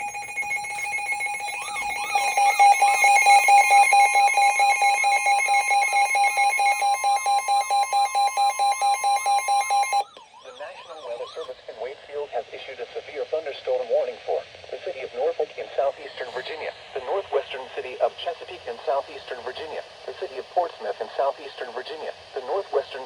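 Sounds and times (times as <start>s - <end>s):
rapidly pulsing beep: 0.0s - 10.0s
steady high alert tone: 0.0s - 10.0s.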